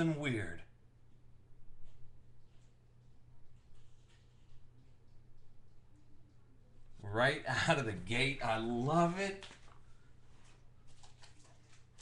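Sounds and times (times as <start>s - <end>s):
low electrical hum: 0.0s - 12.0s
trading cards rustling: 9.3s - 12.0s.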